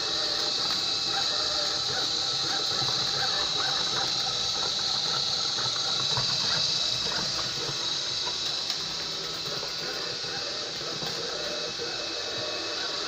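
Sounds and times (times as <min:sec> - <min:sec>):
brushes whirring: 0:00.0 - 0:13.0
robot vacuum suction hiss: 0:00.0 - 0:13.0.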